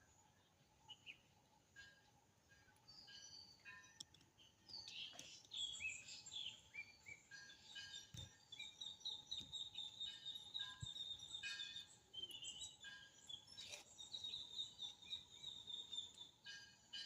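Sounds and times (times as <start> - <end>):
chicks cheeping: 5.0 - 16.5.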